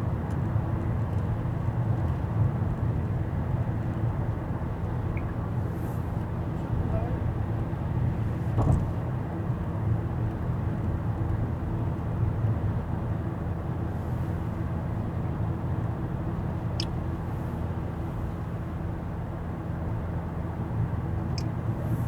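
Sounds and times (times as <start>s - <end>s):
car engine and road noise: 0.0s - 22.0s
brief knock: 8.6s - 8.9s.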